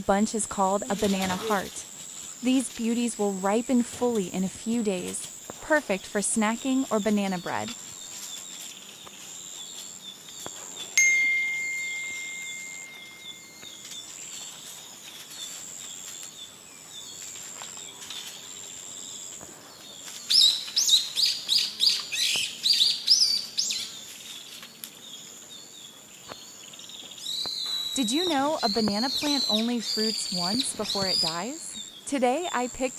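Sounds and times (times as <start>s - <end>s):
birds calling: 0.0s - 32.9s
steady high background noise: 0.0s - 32.9s
clear ringing tone: 11.0s - 13.9s.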